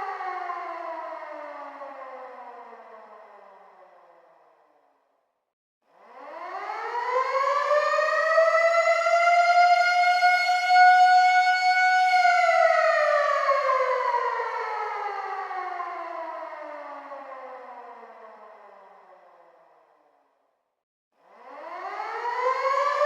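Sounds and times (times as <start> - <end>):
air raid siren: 6.2 - 19.3, 21.4 - 23.0.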